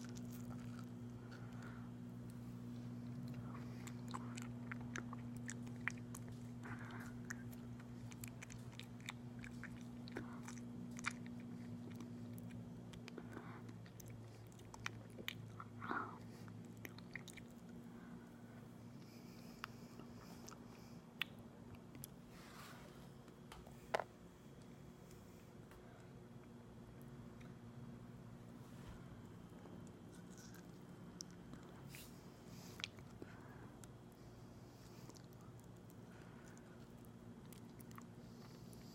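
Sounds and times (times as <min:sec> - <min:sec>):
wet mouth chewing sounds: 0:00.0 - 0:17.8, 0:34.8 - 0:38.9
low steady hum: 0:00.0 - 0:38.9.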